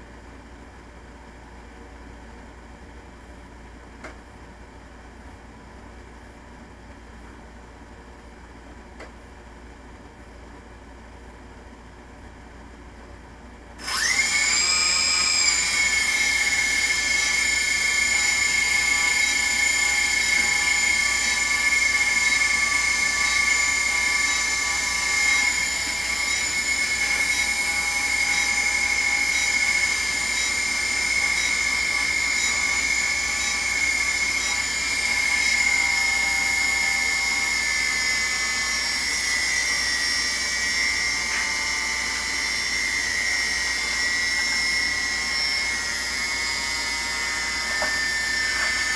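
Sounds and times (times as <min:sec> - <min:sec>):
drone motors whining: 0:13.8 - 0:48.9.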